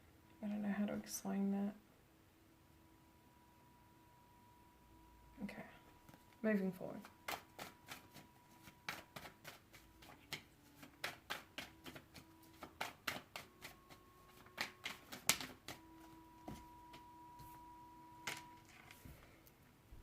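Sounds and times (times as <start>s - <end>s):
faint steady hum: 0.0s - 20.0s
cards being shuffled: 7.0s - 16.7s.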